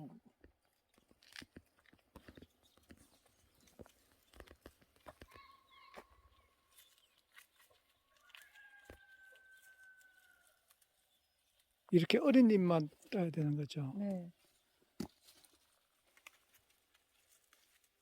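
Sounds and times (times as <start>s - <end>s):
distant rooster crowing: 8.2s - 10.6s.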